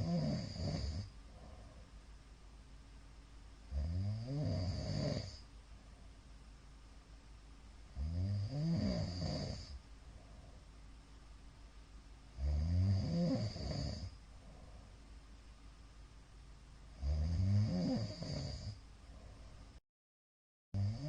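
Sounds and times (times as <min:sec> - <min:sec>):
man snoring: 0:00.0 - 0:01.1, 0:03.7 - 0:05.4, 0:08.0 - 0:09.8, 0:12.4 - 0:14.2, 0:17.0 - 0:18.8, 0:20.8 - 0:21.0.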